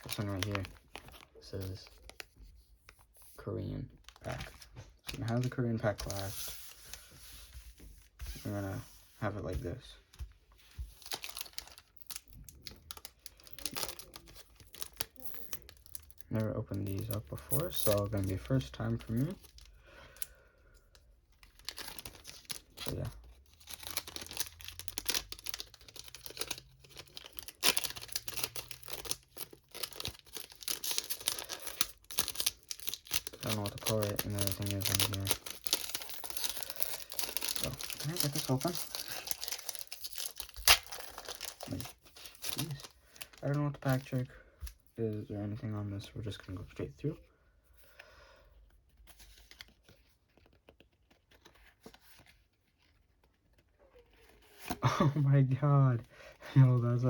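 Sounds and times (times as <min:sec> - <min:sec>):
foil wrappers crinkling: 0:00.0 - 0:02.2, 0:11.0 - 0:20.2, 0:21.4 - 0:44.2.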